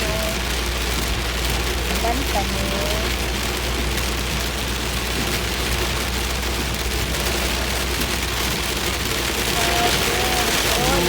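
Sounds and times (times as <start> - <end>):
heavy rain pouring: 0.0 - 11.0.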